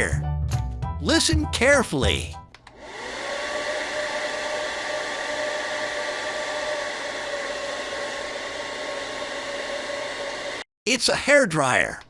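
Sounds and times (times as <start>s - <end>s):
hair dryer running: 2.7s - 10.6s.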